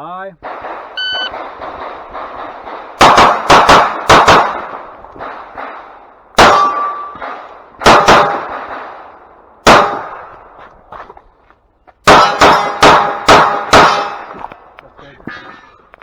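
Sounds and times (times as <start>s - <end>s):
pistol shots: 0.4s - 10.3s, 12.1s - 14.3s
metallic clang of steel targets: 6.4s - 7.5s, 12.1s - 14.3s.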